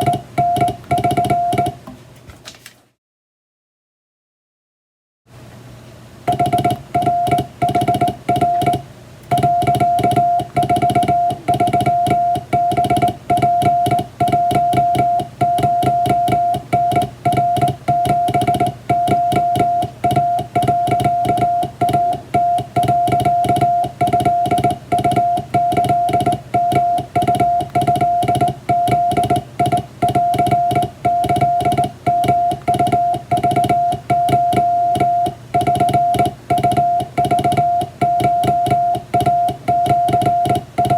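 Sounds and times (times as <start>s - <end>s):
morse code tone: 0.0s - 1.8s, 6.3s - 40.9s.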